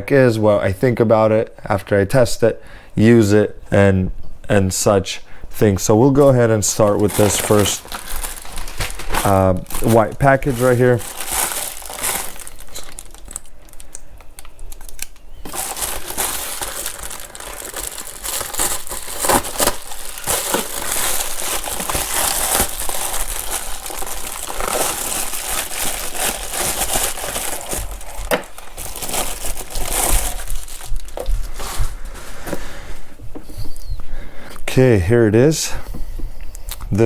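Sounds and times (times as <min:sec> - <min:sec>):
packaging crinkling and crackling: 0:06.6 - 0:32.6.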